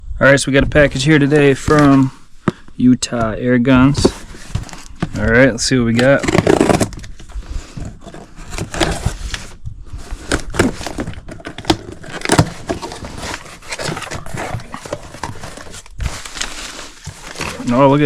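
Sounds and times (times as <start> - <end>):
cardboard box being unpacked: 1.3 - 2.1, 3.8 - 18.0
tape tearing: 4.0 - 18.0.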